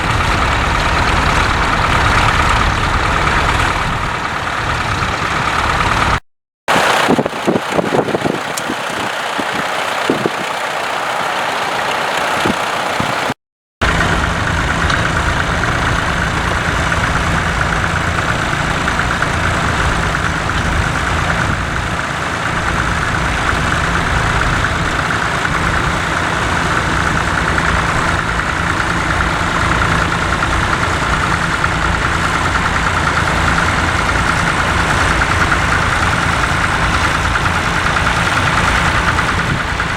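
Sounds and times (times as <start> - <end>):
tractor engine running: 0.0 - 39.9.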